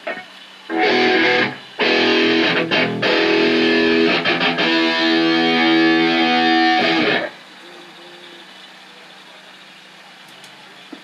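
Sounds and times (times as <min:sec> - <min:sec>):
electric guitar chords: 0:00.0 - 0:07.4.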